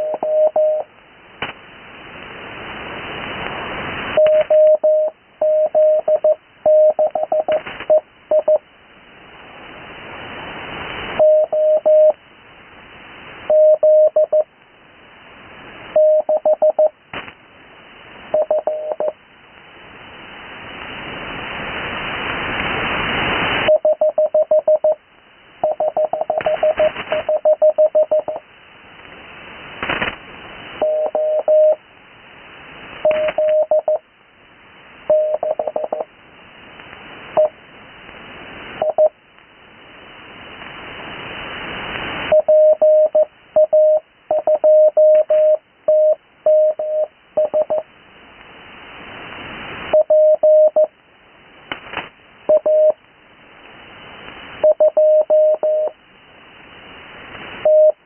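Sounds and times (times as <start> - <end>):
morse code tone: 0.0 - 0.9, 4.2 - 8.6, 11.2 - 12.2, 13.5 - 14.5, 16.0 - 16.9, 18.3 - 19.2, 23.7 - 25.0, 25.6 - 28.4, 30.8 - 31.8, 33.1 - 34.0, 35.1 - 36.1, 38.8 - 39.1, 42.3 - 47.8, 50.0 - 50.9, 52.5 - 53.0, 54.6 - 56.0, 57.6 - 58.0
radio band hiss: 0.0 - 57.7.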